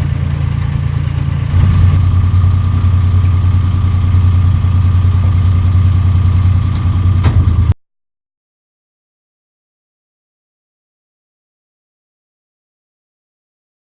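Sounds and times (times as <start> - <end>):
boat engine running: 0.0 - 7.7.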